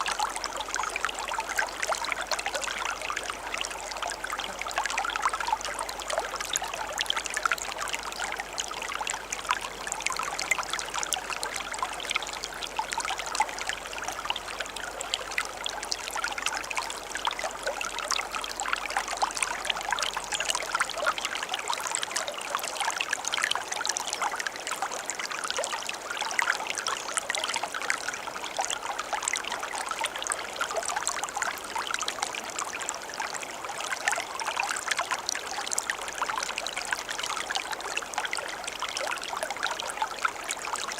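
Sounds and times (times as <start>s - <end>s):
stream trickling and splashing: 0.0s - 40.9s.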